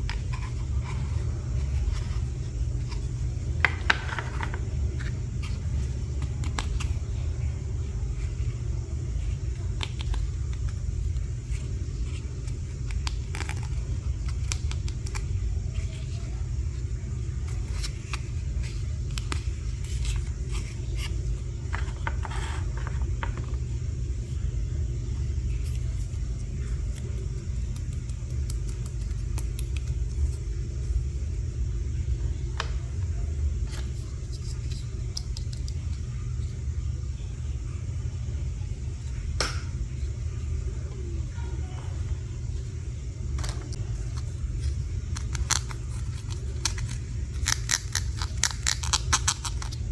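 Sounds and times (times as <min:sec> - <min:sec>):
steady low rumble: 0:00.0 - 0:49.9.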